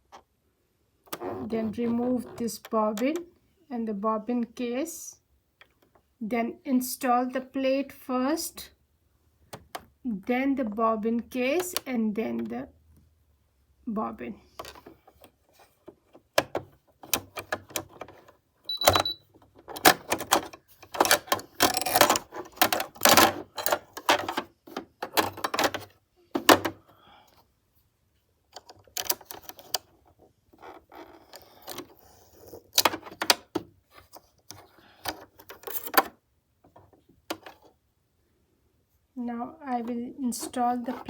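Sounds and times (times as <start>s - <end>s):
metal sewing machine parts clicking: 18.8s - 24.4s.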